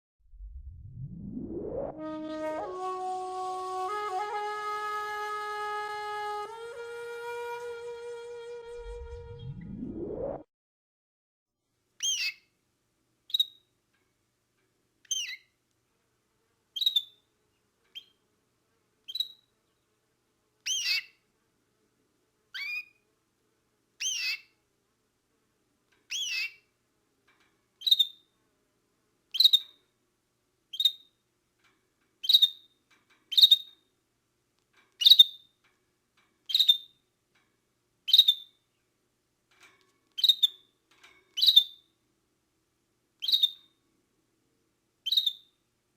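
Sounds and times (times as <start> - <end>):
canary chirping: 12.0 - 12.5, 13.3 - 13.7, 15.0 - 15.5, 16.8 - 17.3, 17.9 - 18.2, 19.0 - 19.5, 20.6 - 21.2, 22.5 - 23.0, 24.0 - 24.6, 26.1 - 26.7, 27.8 - 28.3, 29.3 - 29.8, 30.7 - 31.2, 32.2 - 33.9, 34.9 - 35.6, 36.4 - 37.0, 38.1 - 38.6, 40.1 - 40.7, 41.3 - 41.9, 43.2 - 43.8, 45.0 - 45.6.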